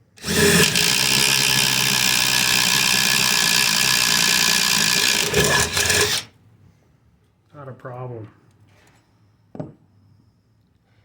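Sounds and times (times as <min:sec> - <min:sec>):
impact driver boring through wood: 0:00.0 - 0:06.3.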